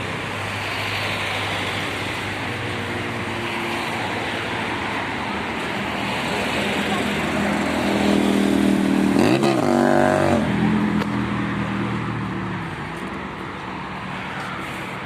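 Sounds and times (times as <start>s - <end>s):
traffic noise: 0.0s - 15.0s
vehicle engine passing: 6.0s - 15.0s.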